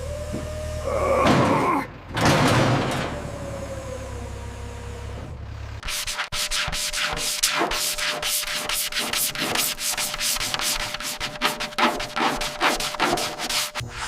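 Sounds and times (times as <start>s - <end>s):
hand sanding strokes: 5.8s - 14.0s.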